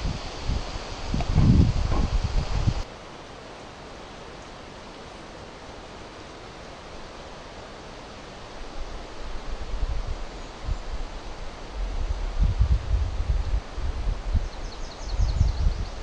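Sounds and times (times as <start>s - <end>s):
wind rumbling on microphone: 0.0s - 2.9s, 8.9s - 16.0s
steady outdoor hiss: 0.0s - 16.0s.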